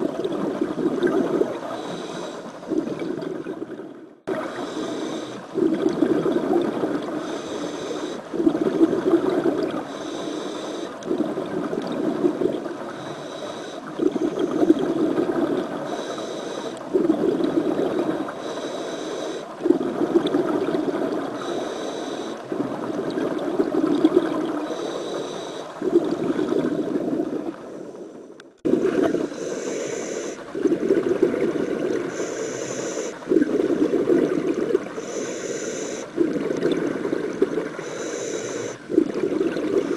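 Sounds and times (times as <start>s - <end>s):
exhaled bubbles bursting: 0.0s - 1.7s, 2.6s - 4.6s, 5.5s - 7.2s, 8.3s - 9.8s, 11.0s - 12.8s, 16.8s - 18.2s, 19.6s - 21.4s, 22.4s - 24.6s, 25.8s - 27.6s, 28.6s - 29.3s, 30.4s - 32.1s, 33.2s - 35.0s, 36.2s - 37.8s, 38.7s - 39.9s
regulator inhalation hiss: 1.7s - 2.5s, 4.6s - 5.4s, 7.2s - 8.3s, 9.8s - 11.0s, 13.0s - 14.6s, 15.9s - 16.8s, 18.4s - 19.5s, 21.4s - 22.4s, 24.7s - 25.8s, 29.3s - 30.4s, 32.1s - 33.2s, 35.0s - 36.1s, 37.8s - 38.8s.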